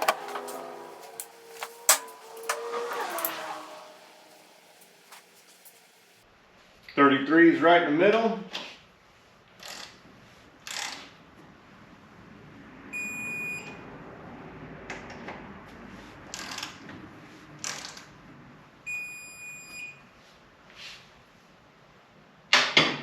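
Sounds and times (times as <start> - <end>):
tool clicks and scrapes: 0.0 - 6.0.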